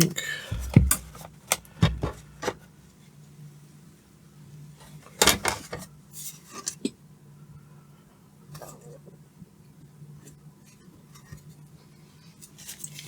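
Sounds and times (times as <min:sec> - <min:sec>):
low steady hum: 0:00.0 - 0:06.2.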